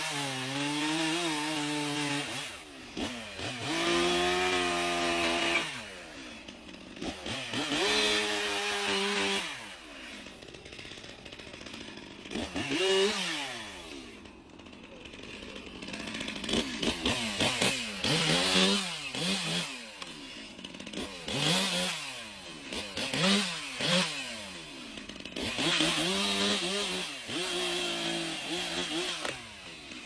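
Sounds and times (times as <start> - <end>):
chainsaw engine revving: 0.0 - 30.0.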